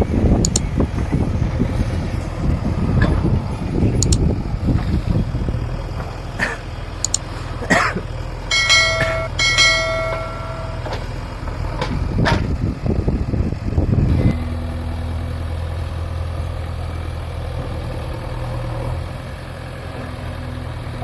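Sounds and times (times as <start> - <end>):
diesel engine running: 0.0 - 21.0
sharp knocks and clanks: 8.5 - 11.1.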